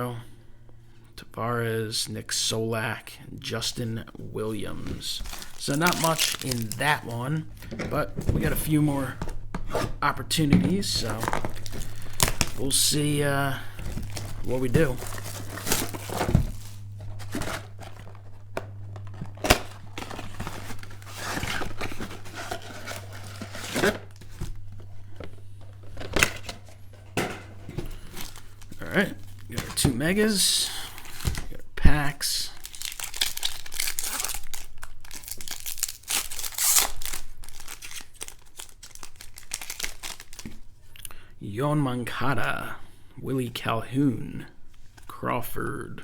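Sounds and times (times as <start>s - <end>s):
low hum: 2.6s - 33.9s
wrappers crinkling: 4.5s - 31.6s, 32.2s - 40.7s.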